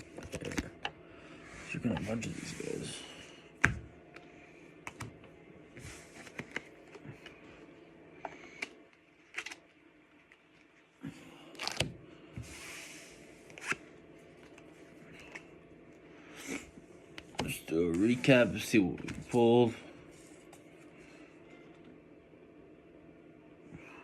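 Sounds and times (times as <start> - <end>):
cards clicking and tapping: 4.8 - 5.2, 6.2 - 7.4.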